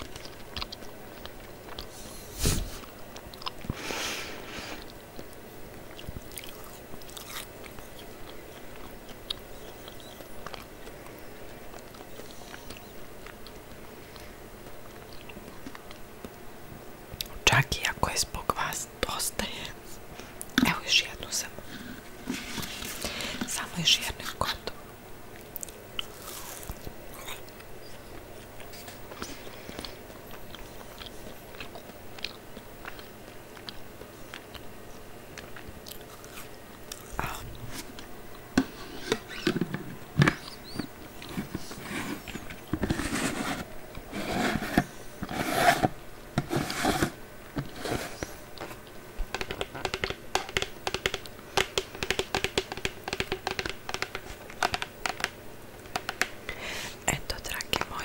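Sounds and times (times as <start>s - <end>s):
crunchy snack chewing: 0.0s - 2.2s, 4.7s - 16.3s, 25.4s - 34.7s, 35.3s - 38.1s.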